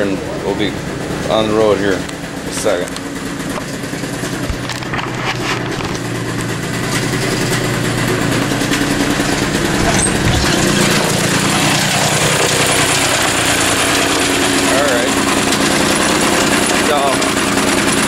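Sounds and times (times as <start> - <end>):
small engine idling: 0.0 - 18.0.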